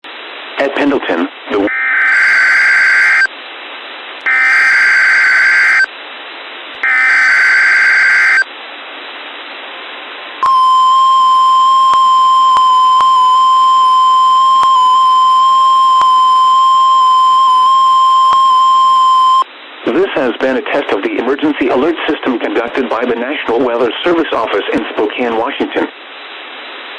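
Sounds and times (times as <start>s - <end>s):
radio hiss: 0.4s - 1.7s, 18.4s - 26.9s
digital data tones: 1.6s - 3.3s, 4.3s - 5.9s, 6.8s - 8.5s, 10.4s - 19.4s
steady alert tone: 1.6s - 3.3s, 4.3s - 5.9s, 6.8s - 8.4s.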